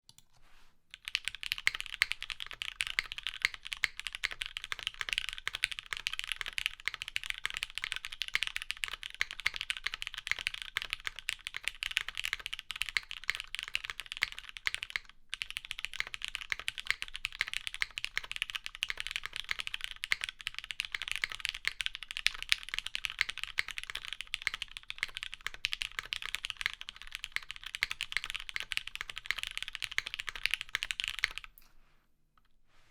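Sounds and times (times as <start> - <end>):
mechanical keyboard typing: 0.9 - 31.5.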